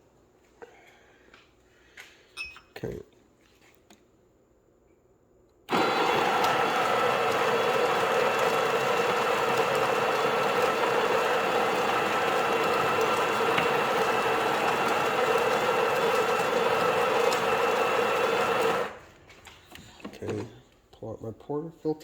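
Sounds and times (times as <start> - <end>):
espresso machine pump humming: 5.7 - 19.1.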